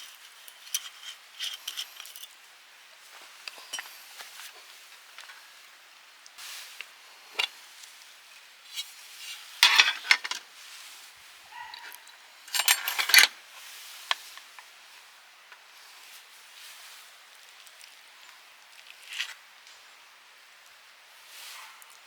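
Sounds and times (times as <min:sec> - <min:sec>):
cookware clinking and scraping: 0:09.6 - 0:10.4, 0:12.5 - 0:13.3.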